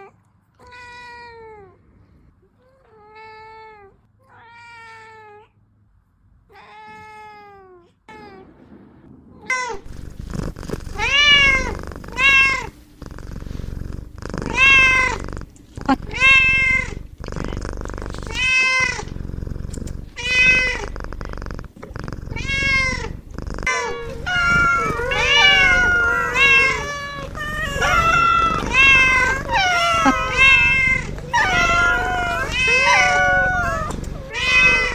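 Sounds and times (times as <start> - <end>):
kittens meowing: 10.9 - 12.8, 14.5 - 15.2, 15.8 - 19.2, 20.2 - 20.9, 22.3 - 34.9.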